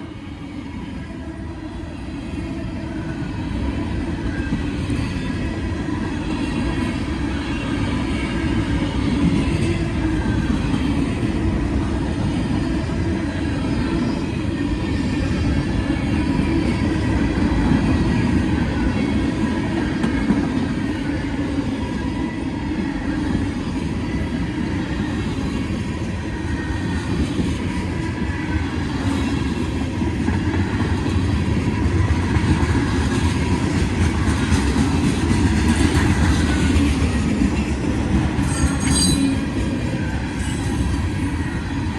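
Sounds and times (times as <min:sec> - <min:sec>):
wheels clickety-clack over rail joints: 0:29.0 - 0:39.8.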